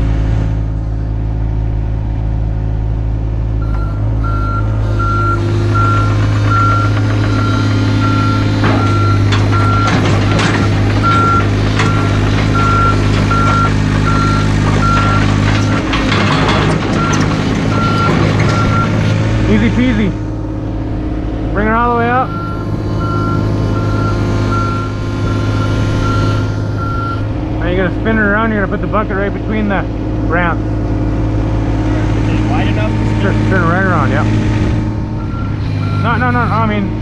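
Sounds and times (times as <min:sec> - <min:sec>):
diesel engine running: 0:00.0 - 0:37.0
travel alarm beeping: 0:03.6 - 0:15.8, 0:17.0 - 0:19.0, 0:22.2 - 0:27.3, 0:35.2 - 0:36.7
metal clanks and rattles: 0:06.1 - 0:19.5.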